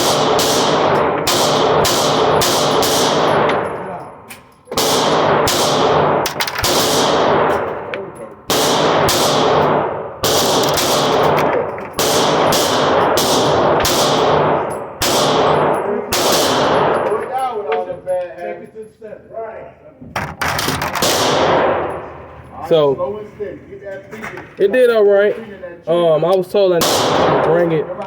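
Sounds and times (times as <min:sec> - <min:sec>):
pistol shots with ringing echo: 0:00.0 - 0:17.4, 0:20.8 - 0:22.3, 0:26.8 - 0:28.0.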